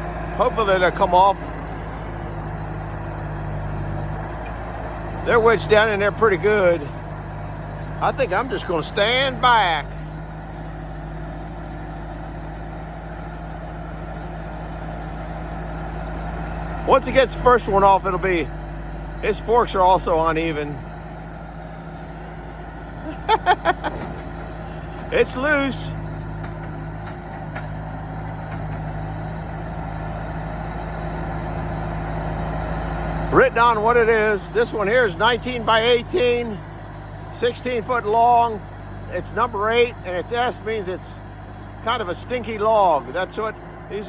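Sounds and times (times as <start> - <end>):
vehicle engine idling: 0.0 - 44.0
faint knocks: 26.0 - 29.2.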